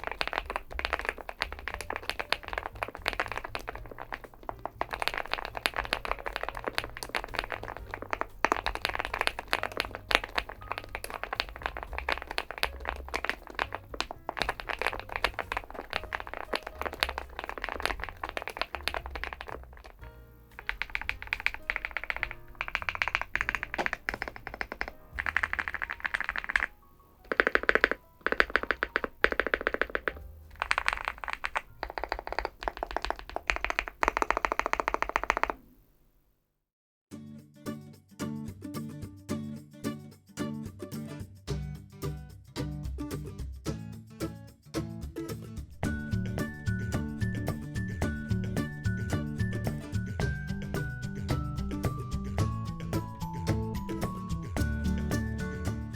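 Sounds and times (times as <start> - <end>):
mechanical keyboard typing: 0.0 - 20.0, 20.6 - 26.7, 27.3 - 35.6
background music: 0.0 - 32.0, 37.3 - 55.9.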